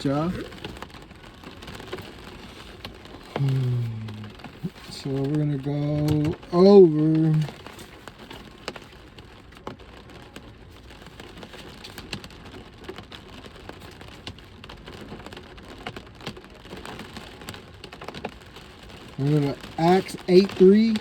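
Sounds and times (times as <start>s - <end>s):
rain falling: 0.0s - 21.0s.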